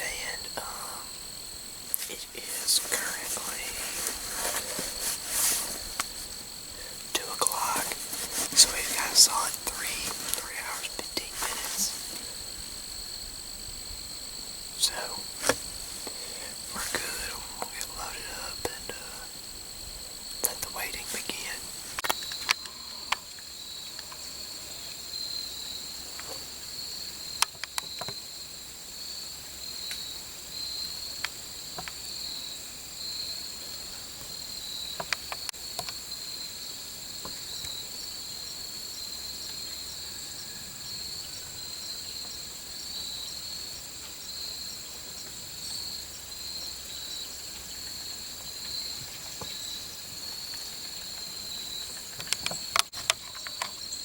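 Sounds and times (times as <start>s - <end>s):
high-pitched insect trilling: 0.0s - 13.2s.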